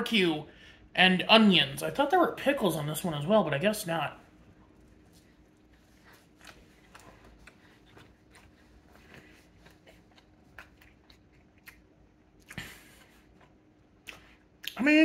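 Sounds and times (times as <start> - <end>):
person chewing food: 4.4 - 14.8
crunching and mouth clicks: 4.7 - 14.8.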